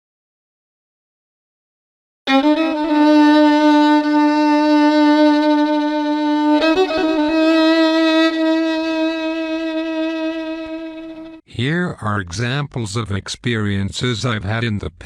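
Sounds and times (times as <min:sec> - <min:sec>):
held bowed string notes: 0:02.3 - 0:11.4.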